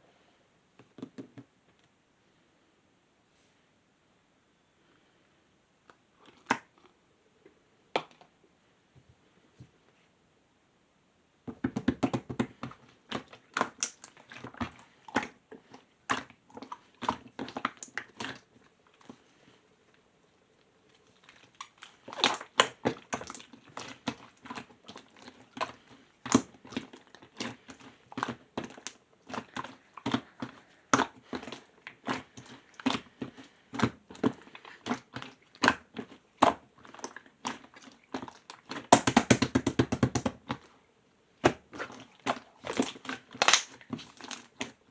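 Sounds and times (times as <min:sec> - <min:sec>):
slime squelching and popping: 0:11.6 - 0:19.2, 0:21.1 - 0:40.7, 0:41.4 - 0:44.9.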